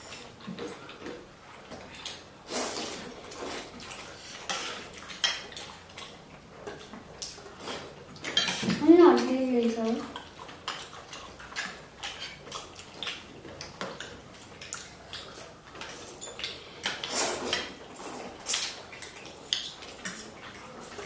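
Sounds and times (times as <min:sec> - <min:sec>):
slurping soup: 0:02.0 - 0:06.2, 0:10.4 - 0:21.0
cutlery clinking against bowl: 0:08.2 - 0:08.8.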